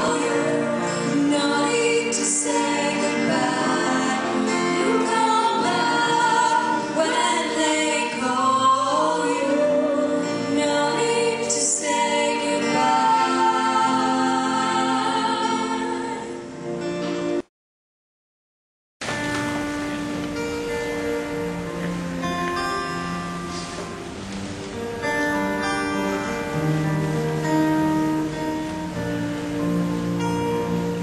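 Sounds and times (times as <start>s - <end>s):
choir singing sustained chords: 0.0s - 17.4s.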